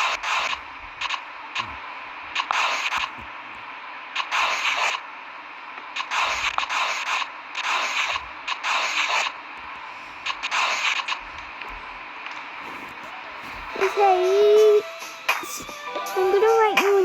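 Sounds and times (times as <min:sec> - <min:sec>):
pen scratching on paper: 0:00.0 - 0:01.7, 0:02.3 - 0:03.4, 0:06.0 - 0:14.1
steady low hiss: 0:00.0 - 0:17.0.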